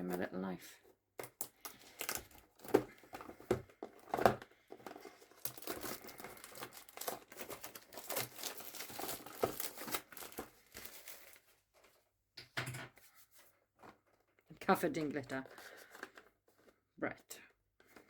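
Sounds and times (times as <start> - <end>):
packaging crinkling and tearing: 4.0 - 11.5.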